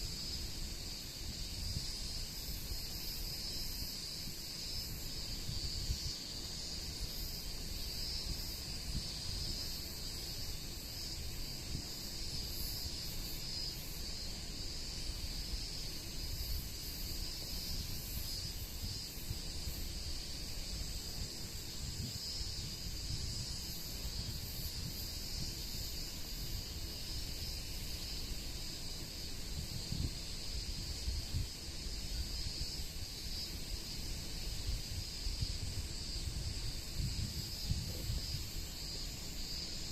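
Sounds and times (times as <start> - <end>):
insects buzzing: 0.0 - 39.9
wind buffeting microphone: 17.7 - 28.0, 29.4 - 39.8.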